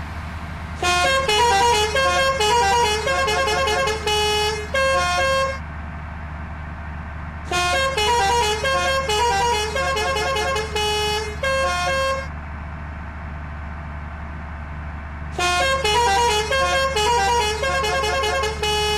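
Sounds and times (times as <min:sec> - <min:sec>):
musical bus horn tooting melodies: 0:00.8 - 0:05.6, 0:07.5 - 0:12.3, 0:15.4 - 0:18.9.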